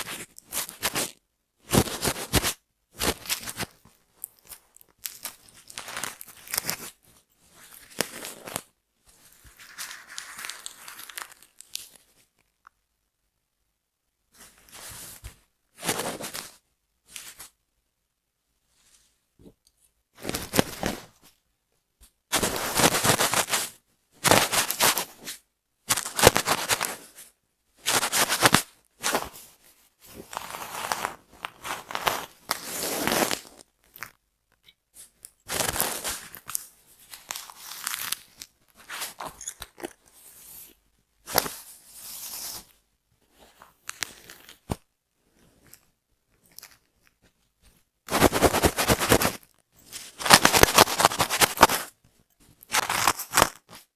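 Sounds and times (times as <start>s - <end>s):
scratching through hair: 7.5s - 11.4s, 22.3s - 33.6s, 35.0s - 42.7s, 48.1s - 51.9s.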